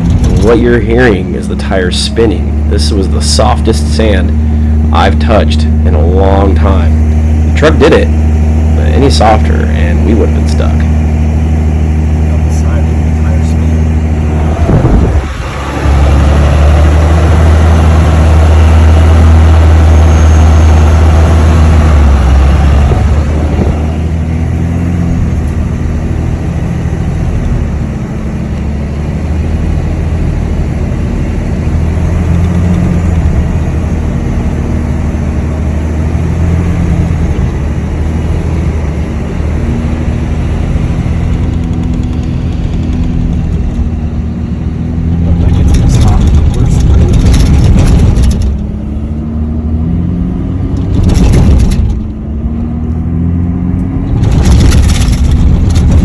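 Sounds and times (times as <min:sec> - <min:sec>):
tyres churning through sand: 0:00.0 - 0:42.5
truck engine under load: 0:00.0 - 0:56.0.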